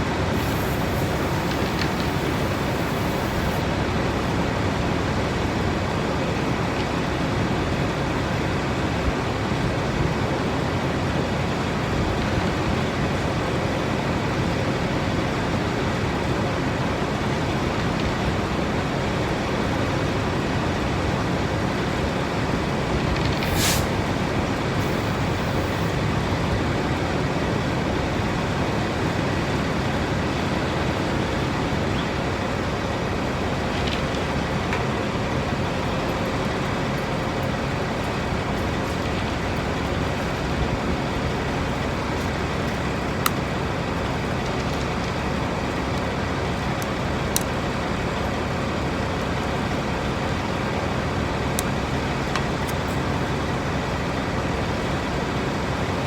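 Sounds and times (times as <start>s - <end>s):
traffic rumble: 0.0s - 8.6s, 14.5s - 56.0s
faint engine hum: 0.0s - 56.0s
short hiss: 0.3s - 3.7s, 23.3s - 24.2s, 24.8s - 26.0s
faint clicks: 0.4s - 3.6s.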